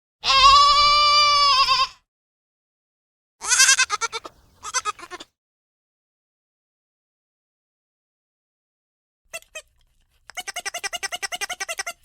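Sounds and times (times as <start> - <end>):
sheep or goat bleating: 0.2 - 2.0, 3.4 - 5.3.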